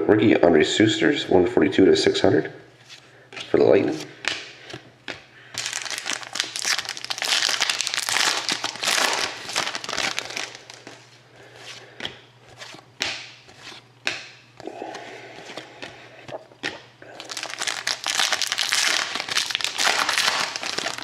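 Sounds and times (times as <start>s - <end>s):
foil wrapper crinkling: 5.6s - 11.1s, 17.2s - 21.0s.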